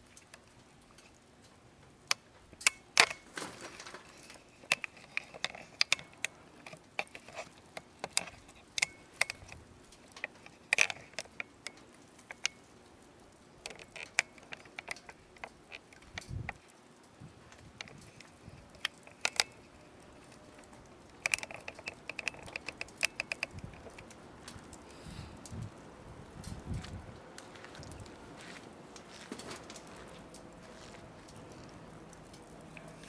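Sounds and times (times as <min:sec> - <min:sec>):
firewood crackling and popping: 0:00.0 - 0:33.0.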